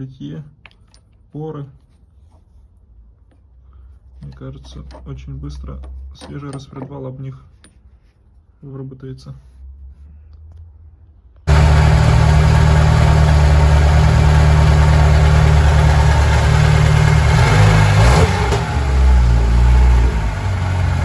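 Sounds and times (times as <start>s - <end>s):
car engine running loudly: 11.5s - 21.0s.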